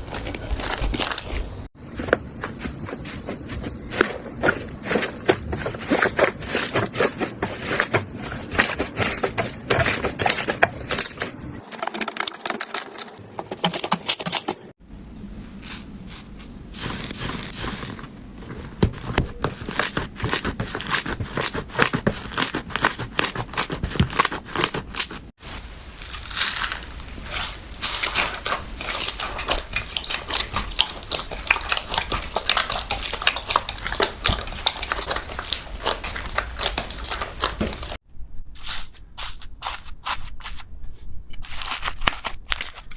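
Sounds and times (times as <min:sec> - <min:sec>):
slime crackling and popping: 0:26.0 - 0:38.0.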